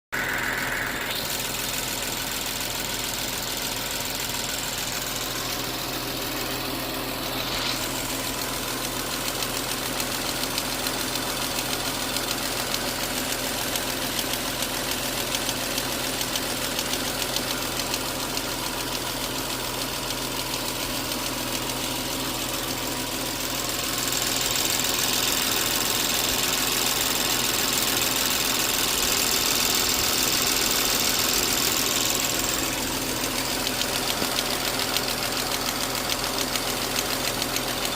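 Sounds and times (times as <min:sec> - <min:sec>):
fast even engine ticking: 0:00.2 - 0:37.9
car engine humming: 0:04.2 - 0:10.0, 0:28.5 - 0:37.9
hiss: 0:07.3 - 0:08.0.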